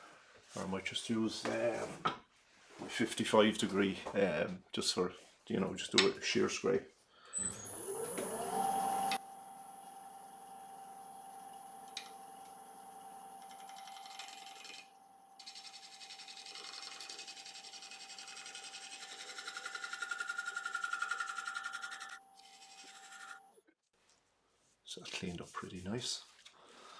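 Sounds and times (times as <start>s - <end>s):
wood lathe whine: 7.4s - 23.6s
gouge scraping spinning wood: 13.7s - 23.5s.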